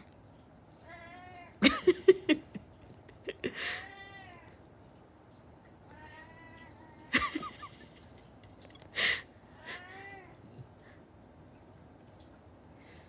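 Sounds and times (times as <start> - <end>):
cat meowing: 0.8 - 1.6, 3.7 - 4.6, 5.9 - 7.1, 9.6 - 10.6.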